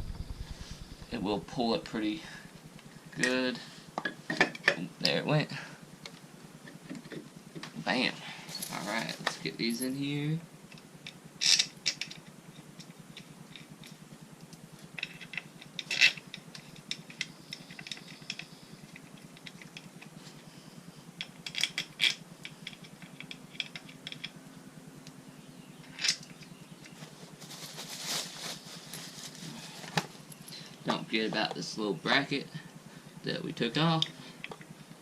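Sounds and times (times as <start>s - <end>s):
metal bolts clinking: 15.0s - 18.4s.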